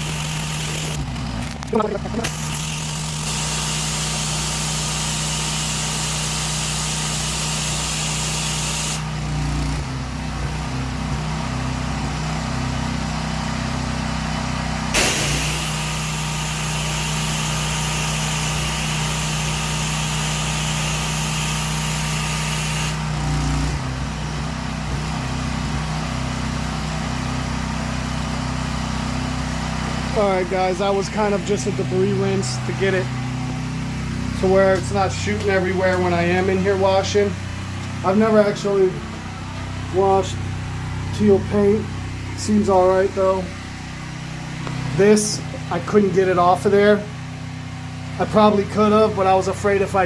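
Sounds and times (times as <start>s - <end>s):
pressure washer engine running: 0.0s - 50.0s
water jet hissing: 15.0s - 18.6s.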